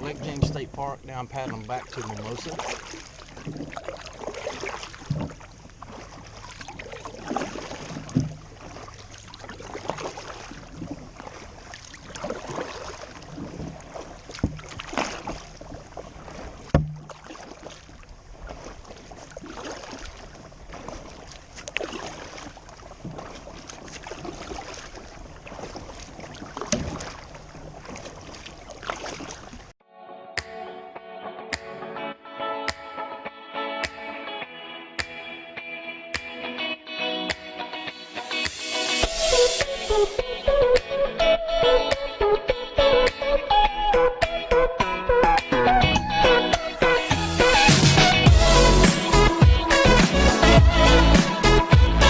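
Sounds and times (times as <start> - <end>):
paddle strokes splashing in water: 0.0 - 29.8
sharp knocks: 16.7 - 17.1.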